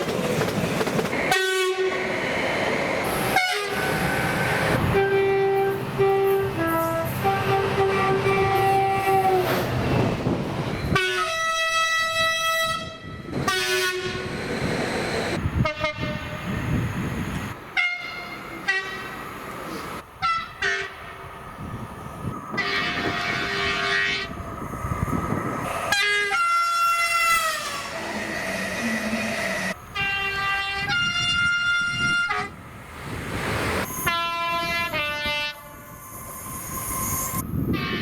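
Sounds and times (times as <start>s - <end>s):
rumble of moving trains: 0.0s - 38.0s
train horns blasting: 1.3s - 2.0s, 3.2s - 9.6s, 10.9s - 14.3s, 15.6s - 16.5s, 17.8s - 19.2s, 20.2s - 21.0s, 22.5s - 24.3s, 25.9s - 28.0s, 29.9s - 32.6s, 34.0s - 36.0s, 37.7s - 38.0s.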